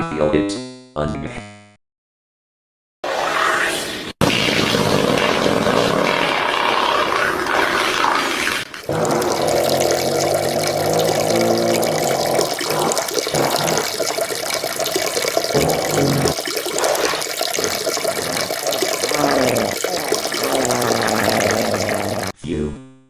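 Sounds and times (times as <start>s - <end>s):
fart tones: 4.2s - 22.3s
liquid stream splashing: 8.6s - 22.3s.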